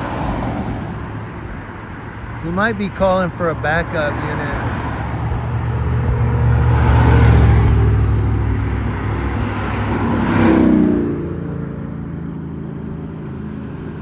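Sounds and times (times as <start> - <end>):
cars passing: 0.0 - 14.0
low engine rumble: 1.0 - 10.3.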